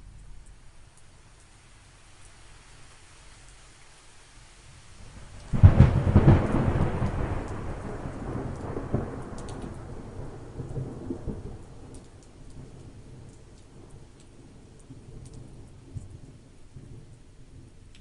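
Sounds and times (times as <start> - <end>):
thunder clap rumbling: 5.4 - 13.9.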